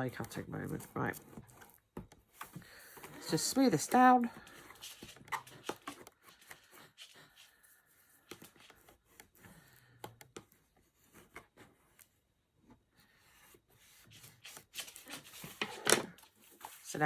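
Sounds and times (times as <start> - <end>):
paper scraping: 2.4 - 7.5, 13.7 - 17.0
card rubbed and pressed by hand: 13.2 - 17.0.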